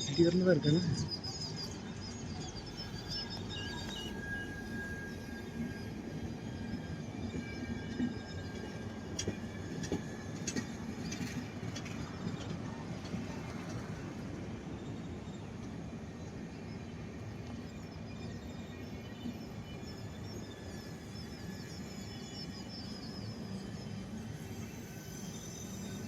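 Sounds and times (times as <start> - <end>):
faint high whine: 0.0 - 26.0
train rumbling on rails: 0.0 - 26.0.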